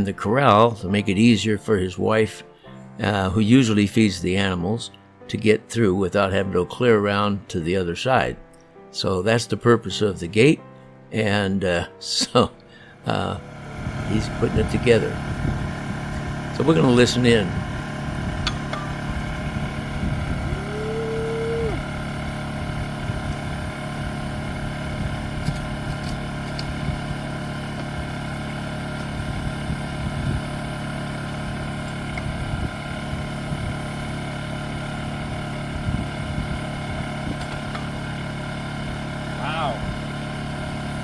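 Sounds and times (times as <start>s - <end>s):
generator engine running: 12.7s - 41.0s
short rising tone: 19.2s - 22.2s.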